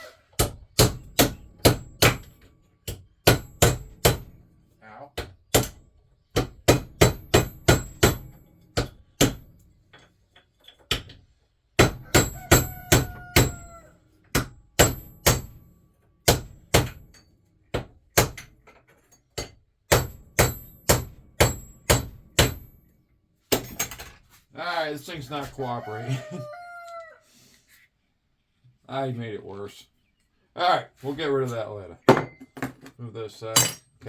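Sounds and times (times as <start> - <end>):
hammer striking metal: 0.4 - 4.4, 5.2 - 10.1, 11.8 - 13.6, 14.3 - 15.6, 16.2 - 18.5, 19.4 - 22.8.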